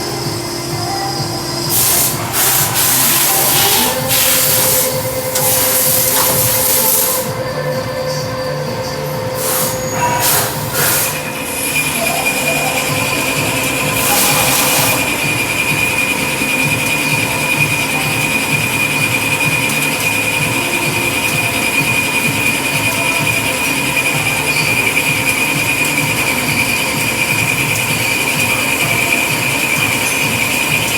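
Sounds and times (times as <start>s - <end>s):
burst of hiss: 1.7s - 7.3s, 9.4s - 11.3s
high-pitched squeal of boring tool: 1.7s - 8.2s, 8.8s - 30.9s.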